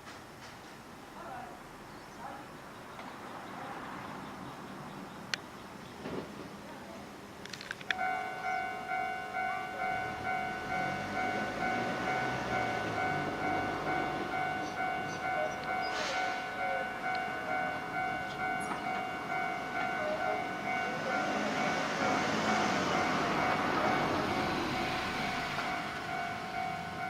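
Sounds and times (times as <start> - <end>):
level crossing alarm ringing: 7.9 - 27.0.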